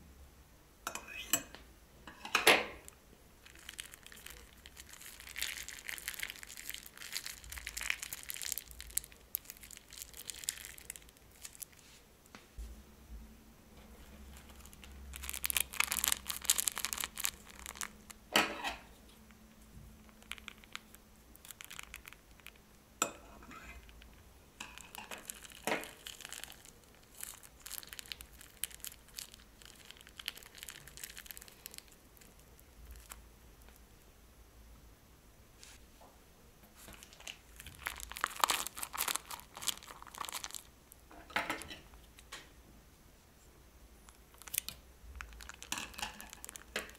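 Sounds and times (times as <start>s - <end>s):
plastic bags crinkling: 3.4s - 11.8s, 14.0s - 19.2s, 20.0s - 22.6s, 24.6s - 33.2s, 36.8s - 40.7s, 44.2s - 46.9s.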